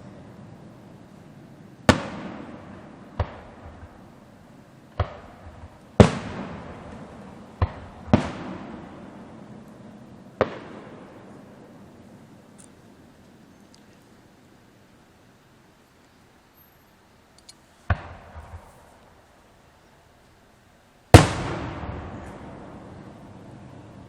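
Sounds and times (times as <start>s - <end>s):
fireworks booming: 0.0s - 12.2s, 17.9s - 19.0s, 21.1s - 24.0s.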